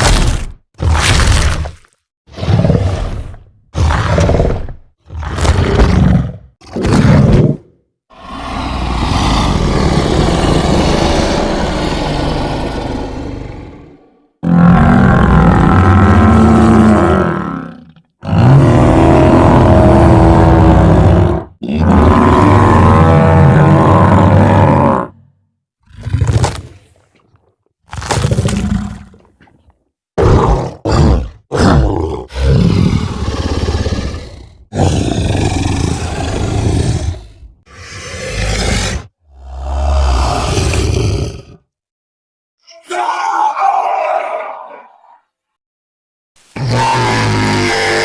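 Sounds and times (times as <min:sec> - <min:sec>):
deep rumbling monster roars: 0:08.1 - 0:25.3, 0:30.2 - 0:41.6, 0:46.6 - 0:48.0.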